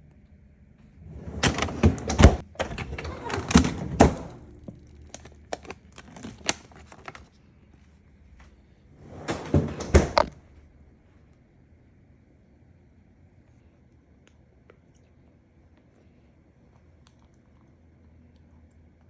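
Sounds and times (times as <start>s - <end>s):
clicks and knocks of objects handled: 1.4s - 7.3s.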